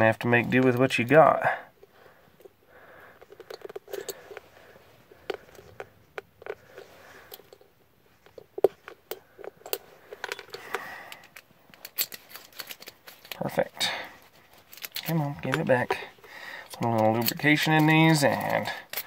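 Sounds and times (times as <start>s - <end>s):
soft scraping of metal parts: 0.0s - 19.0s
metal lock parts clicking: 2.4s - 4.4s, 5.2s - 19.0s.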